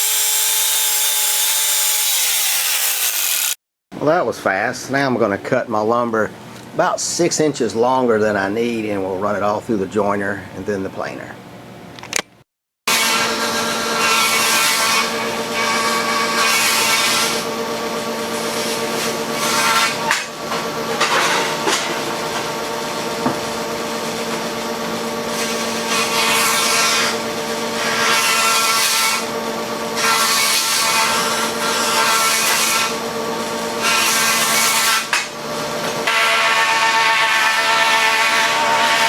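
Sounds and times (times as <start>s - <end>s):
planer cutter rasping through wood: 0.0s - 3.6s, 36.0s - 39.0s
wood planer motor hum: 0.0s - 3.6s.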